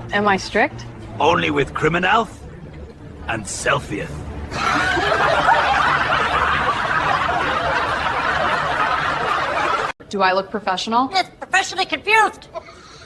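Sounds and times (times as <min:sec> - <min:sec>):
group of people laughing: 0:04.5 - 0:10.0.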